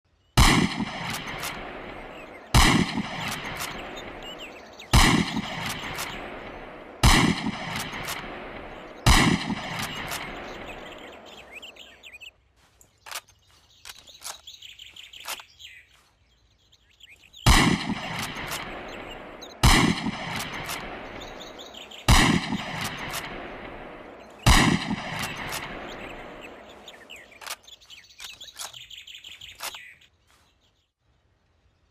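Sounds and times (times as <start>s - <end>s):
rifle shots echoing: 0.4s - 12.1s, 17.4s - 27.6s
small clicks: 12.8s - 14.5s, 15.1s - 15.6s, 25.1s - 30.0s.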